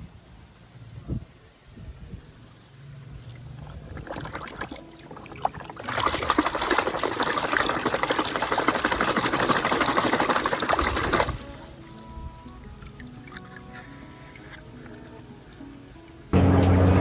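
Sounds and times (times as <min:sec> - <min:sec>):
water pouring and splashing: 0:03.2 - 0:16.4.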